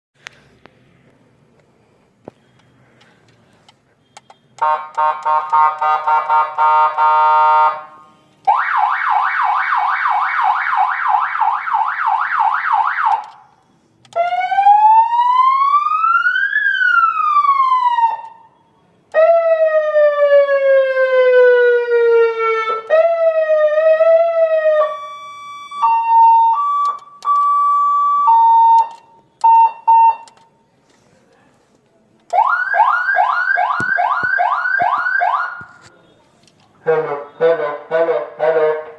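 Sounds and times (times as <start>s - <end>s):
short beeps: 4.0s - 4.6s
electronic vehicle siren: 8.4s - 18.5s, 19.1s - 30.4s, 32.3s - 35.7s.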